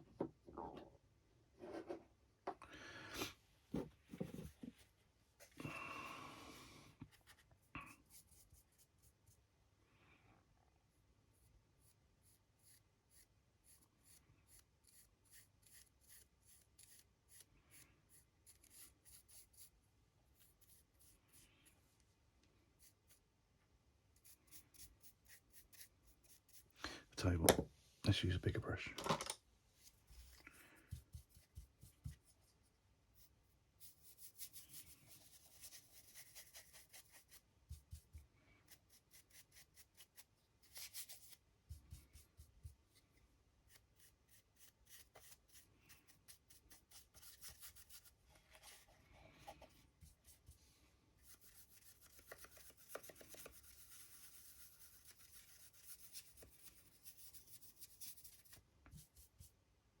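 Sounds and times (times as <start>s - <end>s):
paintbrush scratching and brushing: 29.8s - 59.6s.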